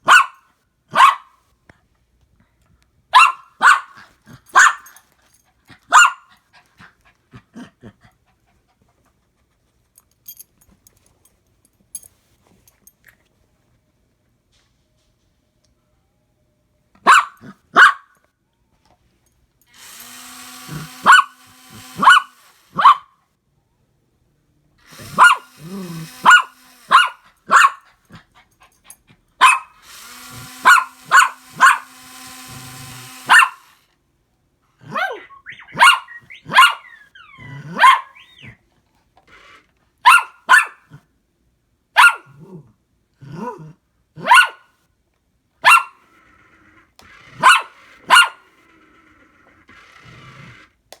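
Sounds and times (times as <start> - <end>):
dog barking: 0.0 - 1.4, 3.1 - 5.0, 5.8 - 6.3, 17.0 - 18.2, 20.7 - 21.4, 22.0 - 23.2, 25.0 - 28.0, 29.4 - 29.8, 30.6 - 31.9, 33.2 - 33.7, 34.8 - 38.6, 40.0 - 41.0, 42.0 - 42.6, 43.3 - 44.7, 45.6 - 46.0, 47.4 - 48.5
toy motors whirring: 4.2 - 5.4, 19.6 - 23.0, 24.8 - 34.0, 35.2 - 40.0, 45.7 - 51.0
dog growling: 7.3 - 8.1, 34.8 - 38.6, 42.3 - 44.3.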